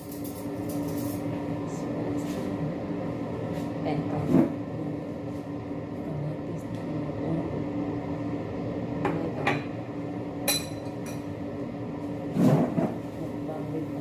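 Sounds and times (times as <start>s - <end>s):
steady low hum: 0.0s - 14.0s
tableware knocks and clinks: 10.5s - 11.2s.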